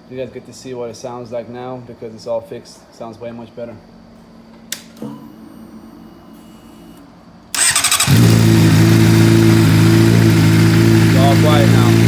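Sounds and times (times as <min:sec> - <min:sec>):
motorcycle engine idling: 0:07.6 - 0:12.0
starter motor cranking: 0:07.6 - 0:12.0.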